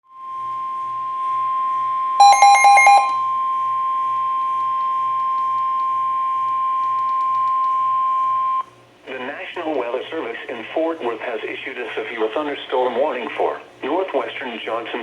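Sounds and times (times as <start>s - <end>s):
rapid beeps: 2.2s - 3.2s
steady high alarm tone: 2.2s - 4.0s.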